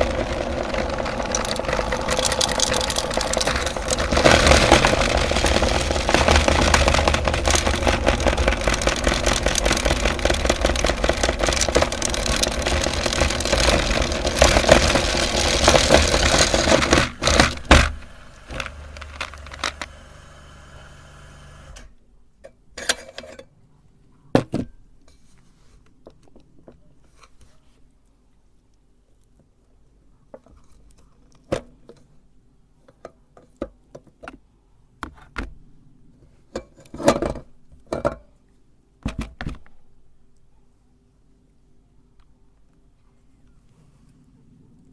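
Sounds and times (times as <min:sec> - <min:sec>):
candy crunching: 0:00.0 - 0:21.8
meat grinder motor running: 0:00.0 - 0:21.8.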